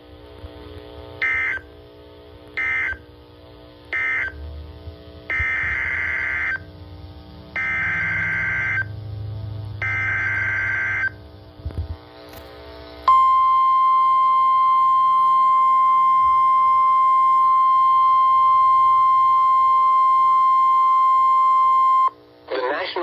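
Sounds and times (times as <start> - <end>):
steady alarm tone: 1.2 - 1.7, 2.6 - 3.0, 3.9 - 4.4, 5.3 - 6.8, 7.5 - 11.2, 13.1 - 22.2.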